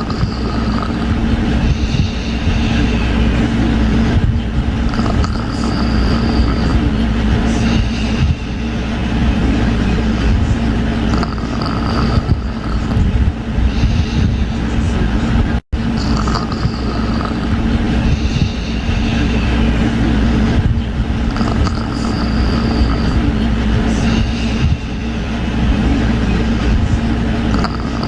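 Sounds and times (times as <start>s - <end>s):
person snoring softly: 0.0s - 4.1s, 4.8s - 10.4s, 11.0s - 13.1s, 15.9s - 20.4s, 21.2s - 25.2s, 27.5s - 28.0s
loud steady low hum: 0.0s - 28.0s.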